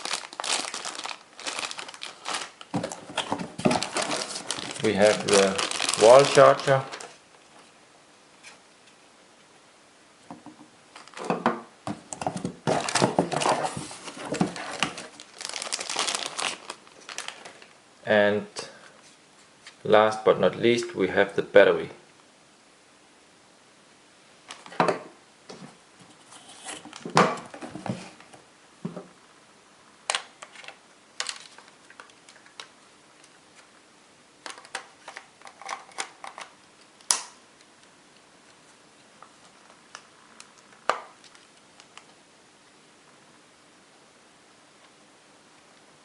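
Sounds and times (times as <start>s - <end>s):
plastic packaging rustling: 0.0s - 7.2s, 10.9s - 11.4s, 12.2s - 17.8s, 30.1s - 33.7s.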